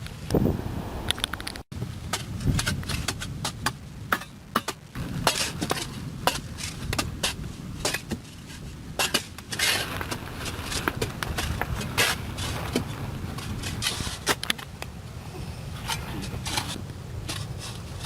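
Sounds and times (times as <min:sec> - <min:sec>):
scraping rush: 0:05.0 - 0:14.5.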